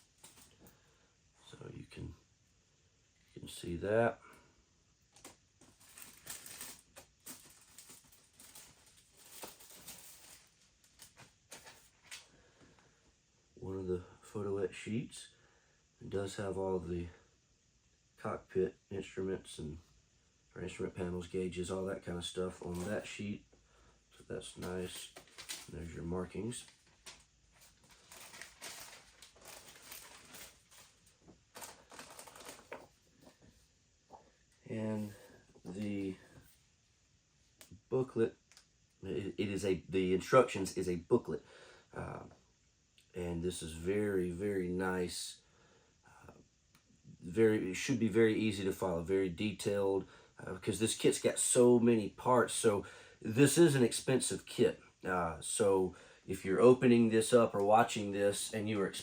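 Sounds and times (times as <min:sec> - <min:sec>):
rustling and clicking of packaging: 0:00.0 - 0:00.8, 0:05.1 - 0:12.3, 0:22.6 - 0:23.1, 0:24.5 - 0:25.9, 0:26.5 - 0:34.2.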